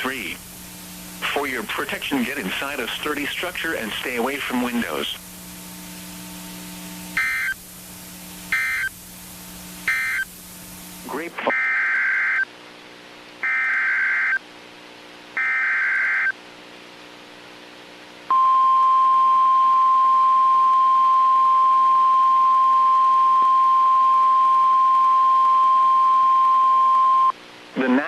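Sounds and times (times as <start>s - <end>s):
buzzing data bursts: 7.1s - 7.6s, 8.5s - 9.0s, 9.8s - 10.3s
single-pitch warning alarm tone: 7.2s - 7.6s, 8.5s - 8.9s, 9.9s - 10.2s.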